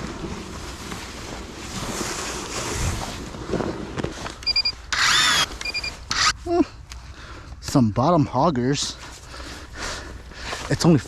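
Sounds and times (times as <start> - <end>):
wind rushing over microphone: 0.0 - 4.2
short electronic beep: 4.4 - 4.8, 5.6 - 6.0.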